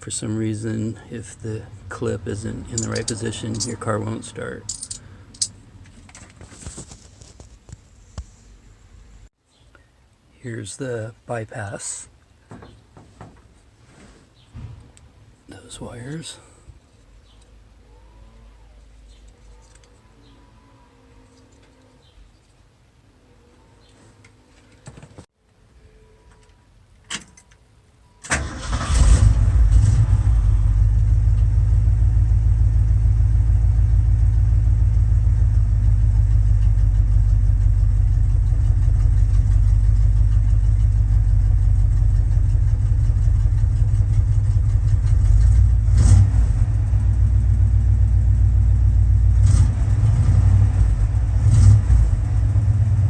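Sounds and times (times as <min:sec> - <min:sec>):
truck engine starting and idling: 0:28.2 - 0:53.0.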